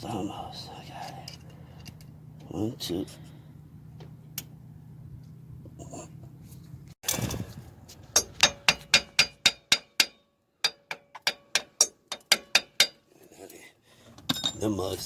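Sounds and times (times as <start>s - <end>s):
hammer tapping metal: 8.2s - 13.0s.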